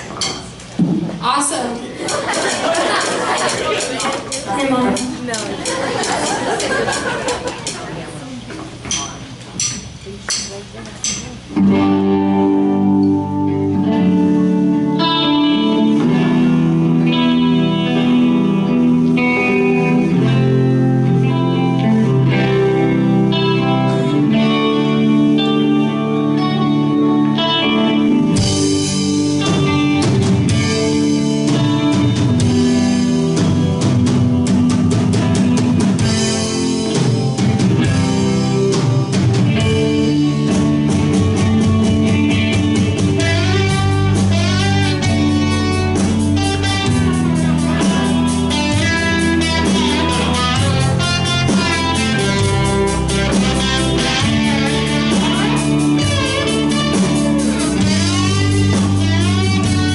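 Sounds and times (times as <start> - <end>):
drum kit with cymbals: 2.0 - 7.9, 28.3 - 59.9
guitar chords: 11.4 - 59.9.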